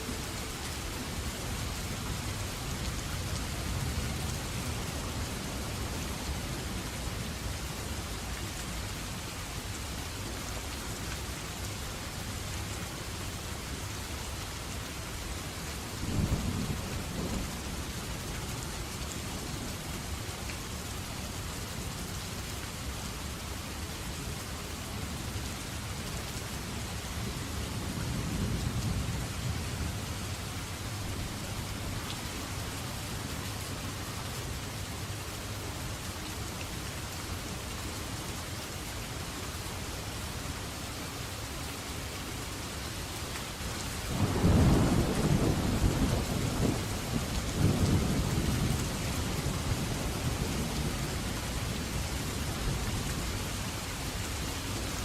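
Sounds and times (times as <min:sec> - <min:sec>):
heavy rain: 0:00.0 - 0:55.0
low thunder rumble: 0:44.1 - 0:51.3.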